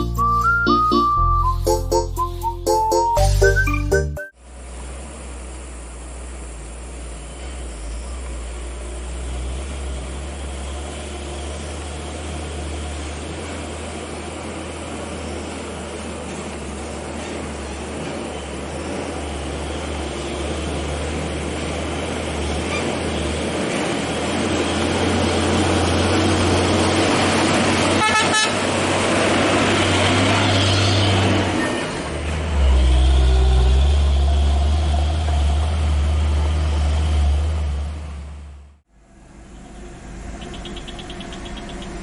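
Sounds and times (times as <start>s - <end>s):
truck diesel engines under load: 0.0s - 42.0s
truck horn toot: 27.8s - 28.7s.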